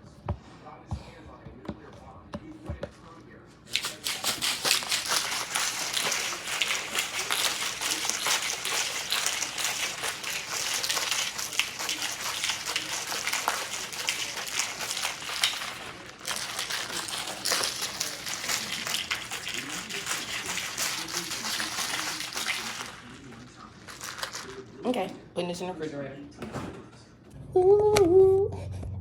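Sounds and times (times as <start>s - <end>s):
water running from a tap: 3.7s - 25.0s.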